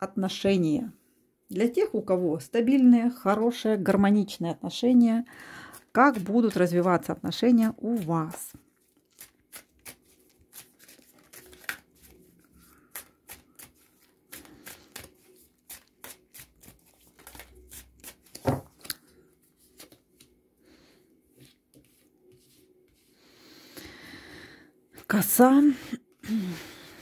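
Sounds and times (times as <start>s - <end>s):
cards shuffling and flicking: 7.8s - 20.3s.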